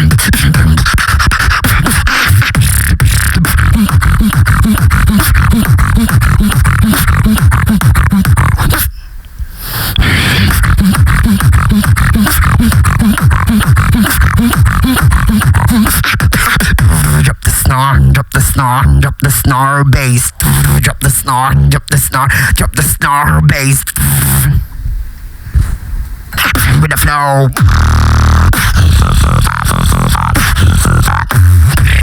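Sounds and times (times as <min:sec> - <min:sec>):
person beatboxing: 0:00.0 - 0:09.0, 0:09.6 - 0:24.7, 0:26.3 - 0:32.0.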